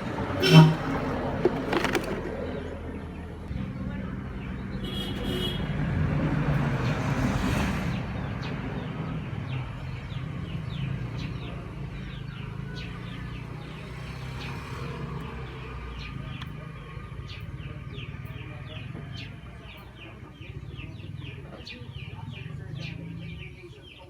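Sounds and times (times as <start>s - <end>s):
birds chirping: 0.0s - 5.6s, 8.1s - 24.0s
vehicle engine running: 0.0s - 6.2s.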